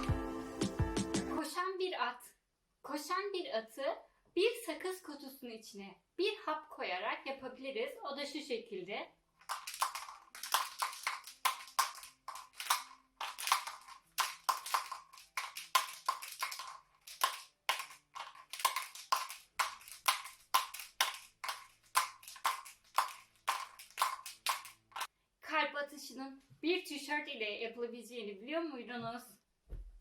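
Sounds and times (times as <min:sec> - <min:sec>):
pill rattling in a box: 0:09.4 - 0:25.1.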